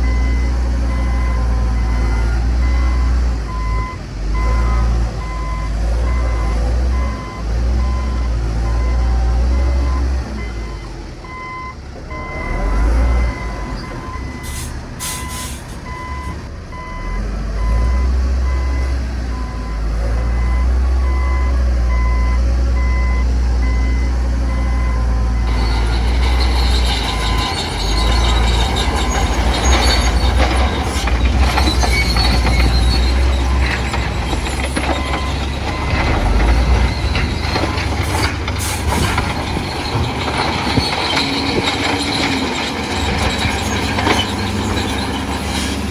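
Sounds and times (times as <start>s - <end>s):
heavy diesel machinery rumbling: 0.0s - 45.9s
reversing alarm beeping: 0.0s - 45.9s
metallic clanking and rattling: 25.4s - 45.9s.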